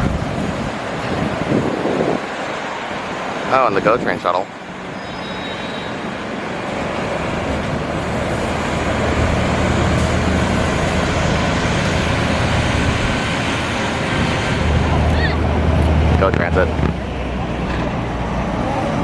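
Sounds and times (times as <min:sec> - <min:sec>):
bus engine and road rumble: 0:00.0 - 0:19.0.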